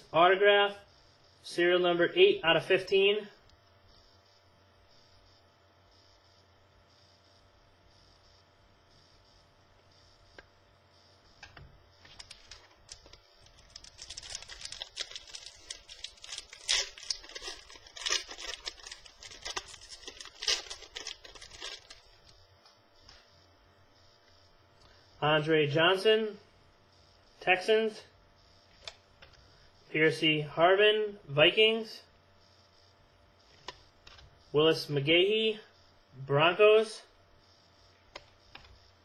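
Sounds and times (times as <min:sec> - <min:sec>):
card pack wrapper crinkling: 0:12.0 - 0:22.0.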